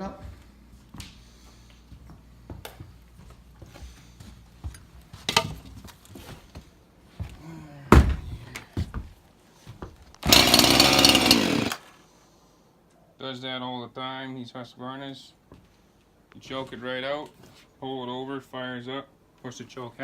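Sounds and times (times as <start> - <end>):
starter cord pulls: 10.2 - 11.8
chainsaw engine running: 10.2 - 11.9.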